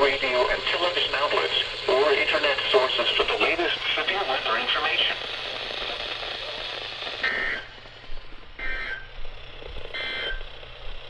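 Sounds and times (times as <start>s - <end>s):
radio hiss: 0.0s - 11.0s
digital data tone bursts: 7.2s - 7.7s, 8.6s - 9.2s, 9.9s - 10.6s.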